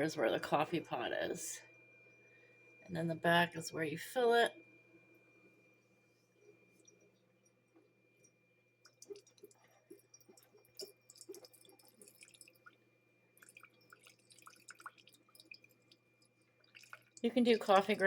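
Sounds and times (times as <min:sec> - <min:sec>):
water dripping and trickling: 0:08.8 - 0:12.8, 0:13.4 - 0:18.0.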